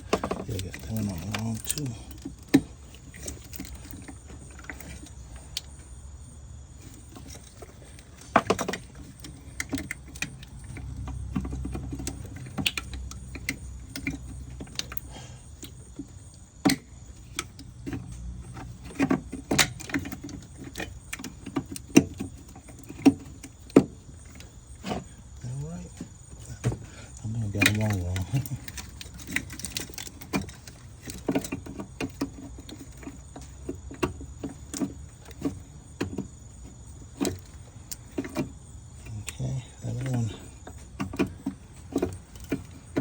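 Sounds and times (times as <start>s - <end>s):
plastic connectors clicking and rattling: 0.1s - 5.7s, 27.6s - 36.2s.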